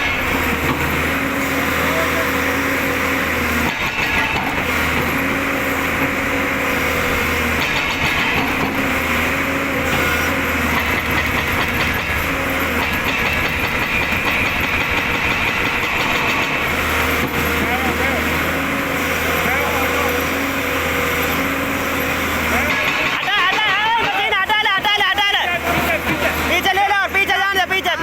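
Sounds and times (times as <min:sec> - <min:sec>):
excavator diesel engine running: 0:00.0 - 0:28.0
demolition clattering: 0:22.4 - 0:27.4.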